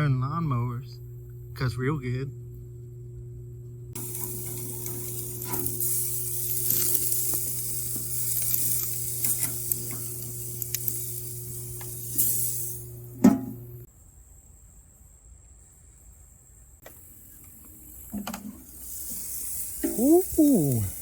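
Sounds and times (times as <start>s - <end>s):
low hum: 0.0s - 13.9s
steak sizzling on a grill: 4.0s - 13.2s, 17.7s - 21.0s.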